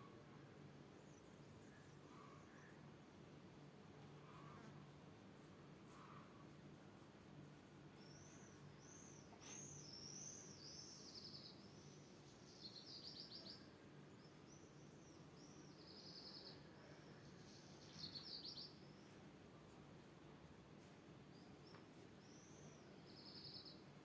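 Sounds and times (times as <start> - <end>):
songbird singing: 7.9 - 19.3, 21.3 - 24.0.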